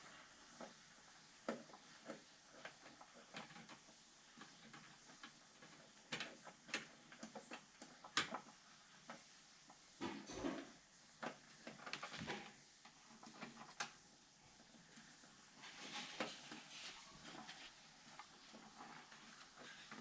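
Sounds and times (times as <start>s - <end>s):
rustling: 14.6s - 20.0s.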